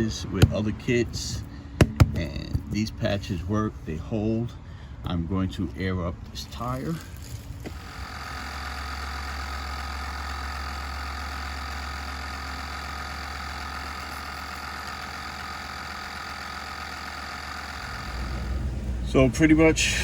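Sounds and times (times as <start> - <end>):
air compressor running: 7.0 - 20.0.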